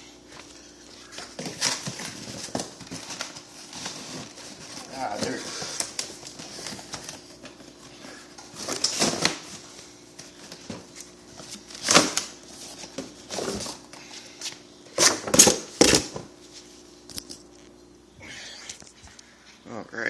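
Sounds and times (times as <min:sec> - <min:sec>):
packaging rustling and crinkling: 0:00.4 - 0:14.0.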